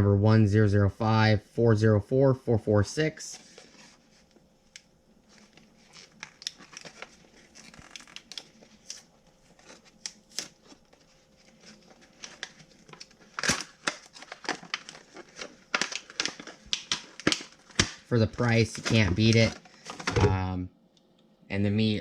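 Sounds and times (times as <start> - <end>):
plastic packaging crinkling and tearing: 3.4 - 20.4.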